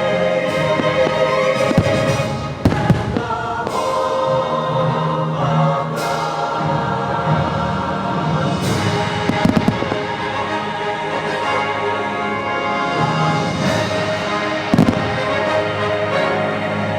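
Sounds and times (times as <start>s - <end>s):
choir singing over speakers: 0.0s - 16.9s
firework bursts: 0.5s - 4.3s, 8.7s - 11.0s, 13.6s - 16.1s
firework crackles: 0.5s - 4.3s, 8.7s - 11.0s, 13.4s - 15.8s.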